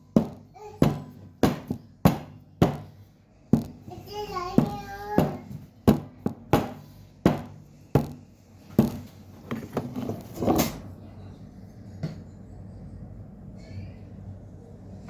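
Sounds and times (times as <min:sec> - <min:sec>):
sharp knocks: 0:04.6 - 0:09.1.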